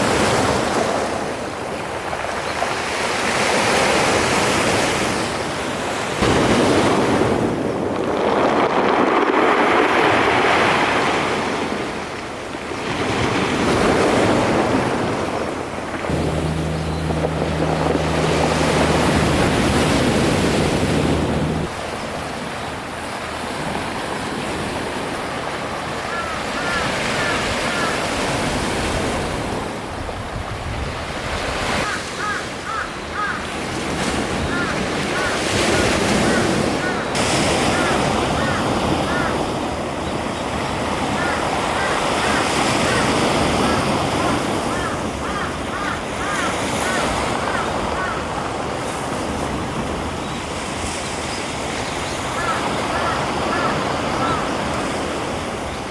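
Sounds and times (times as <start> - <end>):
sea waves washing in: 0.0 - 29.9, 33.8 - 51.9
wind buffeting microphone: 6.2 - 26.0
wind on microphone: 12.8 - 22.4
steady low hum: 15.9 - 21.8.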